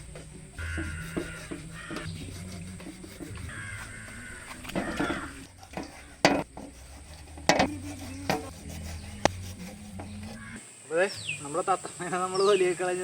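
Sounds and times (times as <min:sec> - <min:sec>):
steady low hum: 0:00.0 - 0:10.6
kitchen utensils knocking: 0:02.8 - 0:06.8, 0:07.4 - 0:08.5.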